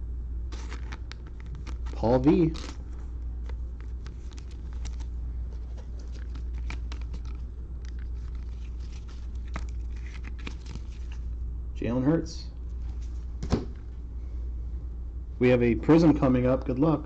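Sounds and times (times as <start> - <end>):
low hum: 0.0 - 17.0
card clicks and rustles: 0.5 - 11.3
trading cards handled: 0.5 - 11.4.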